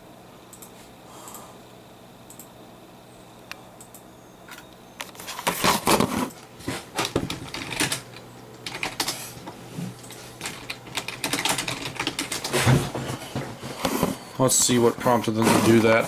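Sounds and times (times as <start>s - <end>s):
typing on computer keyboard: 7.0s - 9.2s, 10.0s - 12.5s.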